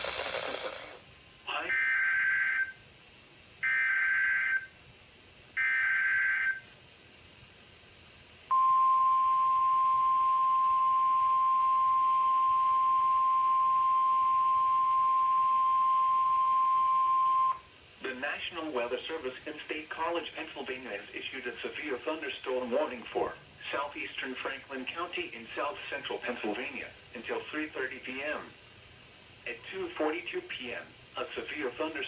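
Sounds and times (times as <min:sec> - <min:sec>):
steady high warning tone: 0:08.5 - 0:17.7.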